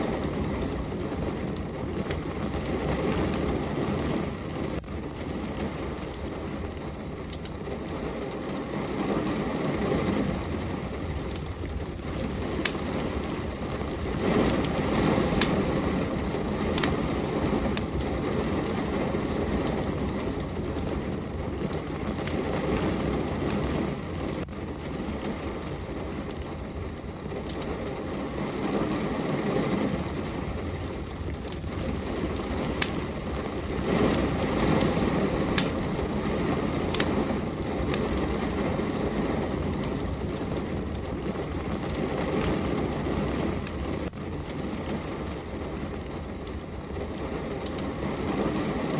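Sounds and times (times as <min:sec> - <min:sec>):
fireplace fire popping: 0:00.0 - 0:48.9
steady rain: 0:00.0 - 0:48.9.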